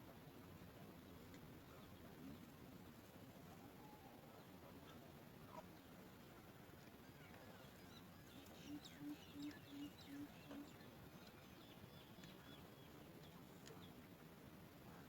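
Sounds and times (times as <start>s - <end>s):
bird low hoots: 8.6s - 10.8s.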